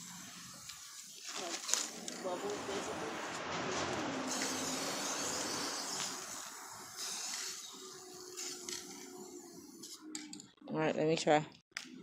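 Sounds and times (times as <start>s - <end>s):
spray paint can hissing: 0.0s - 3.1s, 4.2s - 10.2s.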